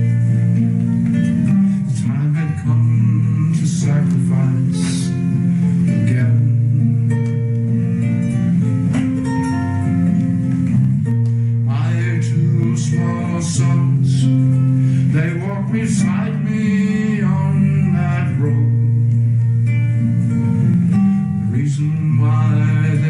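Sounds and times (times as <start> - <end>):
acoustic guitar chords: 0.0 - 23.0
person singing: 1.3 - 8.1, 11.6 - 19.4, 21.4 - 23.0.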